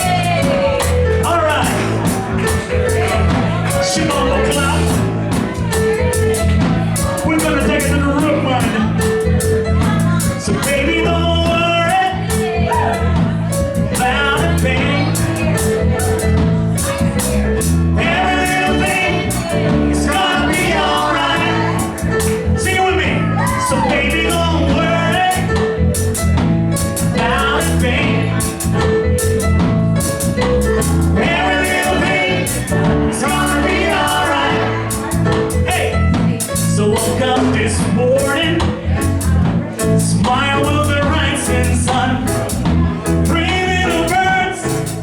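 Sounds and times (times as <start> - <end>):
person singing wordless phrases: 0.0 - 5.2
reggae band playing: 0.0 - 45.0.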